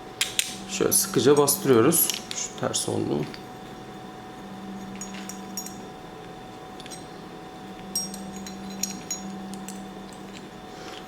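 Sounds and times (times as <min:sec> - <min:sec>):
steady low hum: 0:00.0 - 0:11.0
metal and plastic parts clinking: 0:08.0 - 0:11.0.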